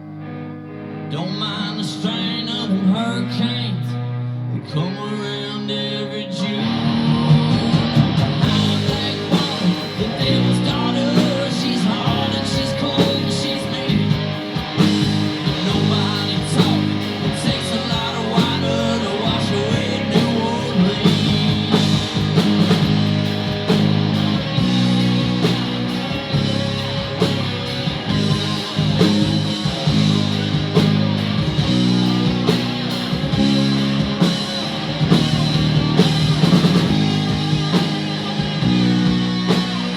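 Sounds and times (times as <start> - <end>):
bass: 0.0 - 39.9
electric guitar: 0.0 - 39.9
drums: 5.4 - 39.9.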